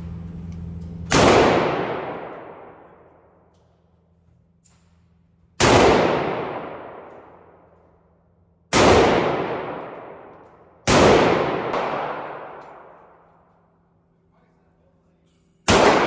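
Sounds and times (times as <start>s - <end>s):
pistol shots echoing: 1.1s - 3.3s, 5.6s - 7.8s, 8.7s - 13.5s, 15.7s - 16.0s.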